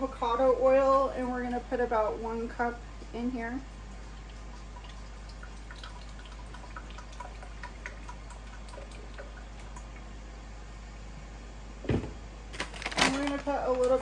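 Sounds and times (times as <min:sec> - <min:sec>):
oil pouring with glugs and drips: 0:03.6 - 0:10.1.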